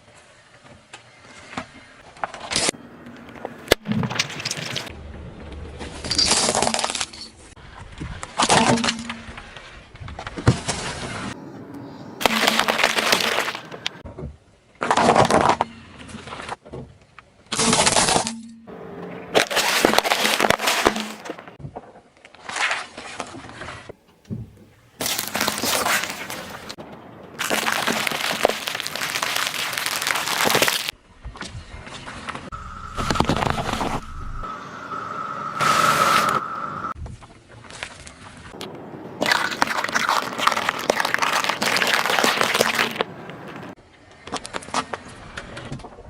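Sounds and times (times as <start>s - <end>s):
things crunching under car tyres: 1.4s - 11.4s, 12.2s - 14.1s, 19.0s - 23.9s, 24.8s - 34.5s, 35.6s - 46.0s.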